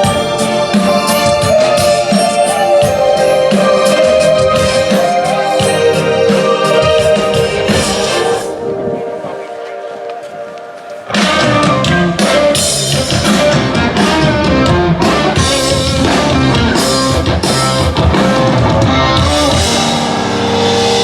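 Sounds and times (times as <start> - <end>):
drum kit beat: 0.0 - 8.5, 11.0 - 21.0
electric guitar: 11.1 - 21.0.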